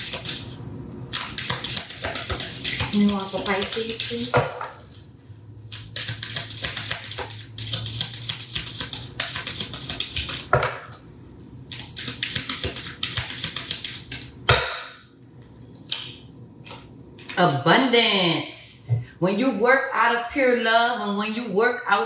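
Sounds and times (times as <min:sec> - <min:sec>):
cards being shuffled: 0:01.1 - 0:05.1, 0:05.8 - 0:10.7, 0:11.7 - 0:14.3.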